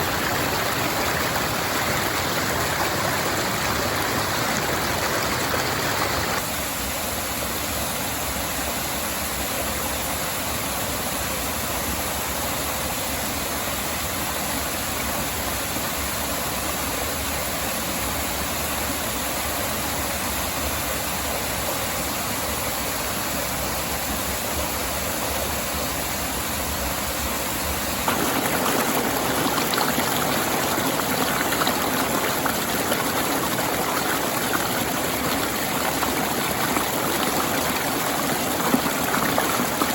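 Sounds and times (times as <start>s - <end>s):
small waterfalls: 0.0s - 6.6s, 27.9s - 39.9s.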